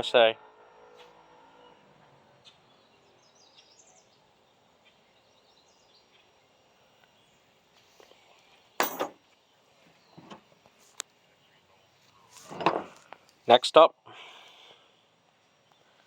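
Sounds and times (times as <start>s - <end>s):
wrench clanking against tools: 8.8s - 9.2s.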